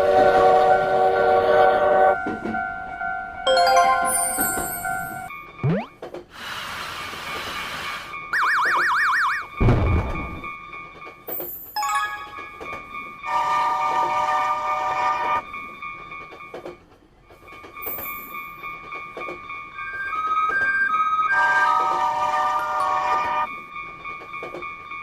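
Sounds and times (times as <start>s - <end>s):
falling electronic tones: 5.6s - 5.9s.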